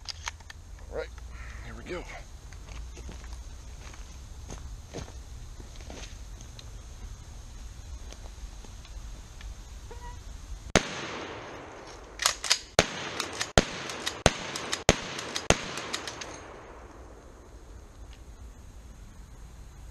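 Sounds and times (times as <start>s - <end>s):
smaller cracks: 10.8s - 17.0s
shotgun blasts: 10.8s - 17.1s.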